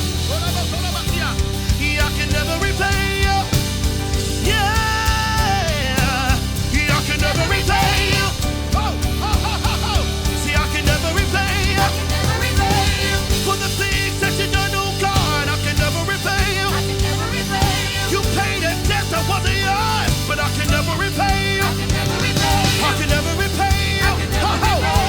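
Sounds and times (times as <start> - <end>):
gospel worship band music: 0.0 - 25.0.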